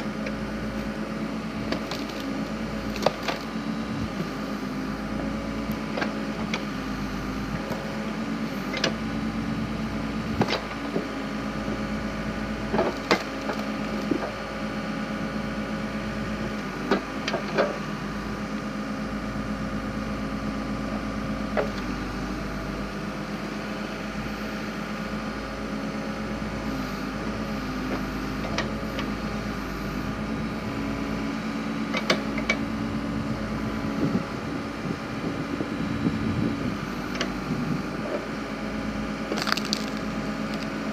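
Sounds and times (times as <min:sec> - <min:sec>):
backhoe engine running: 0:00.0 - 0:40.9
wood splitting cracks: 0:01.7 - 0:03.5, 0:12.8 - 0:14.4, 0:39.3 - 0:40.8.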